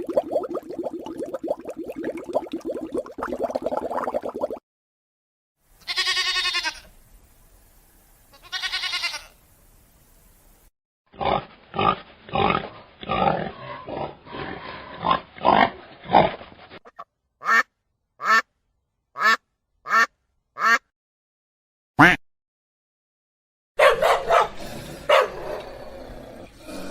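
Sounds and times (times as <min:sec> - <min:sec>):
animal grunts: 0:11.2 - 0:16.4
short barks: 0:23.8 - 0:25.3.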